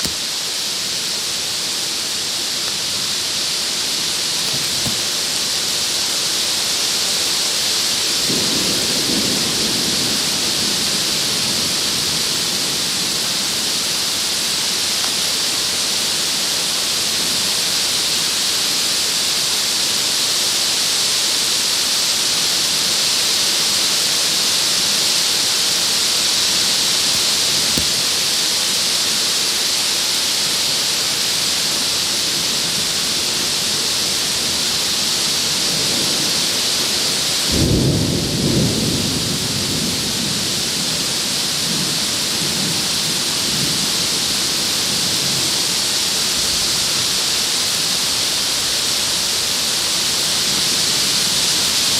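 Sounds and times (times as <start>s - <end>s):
raindrops hitting plastic covering: 0.0s - 0.4s, 4.2s - 5.6s, 27.0s - 28.2s
torrential rain pouring: 7.6s - 20.4s, 32.4s - 51.9s.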